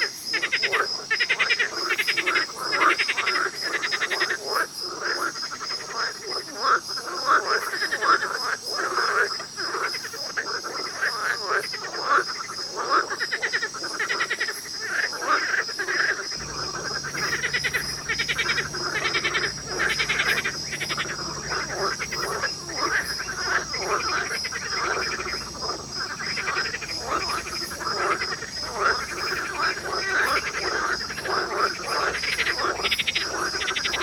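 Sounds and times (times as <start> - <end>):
frogs croaking: 0.0 - 34.0
high pulsing tone: 16.4 - 30.6
low hum: 16.4 - 34.0.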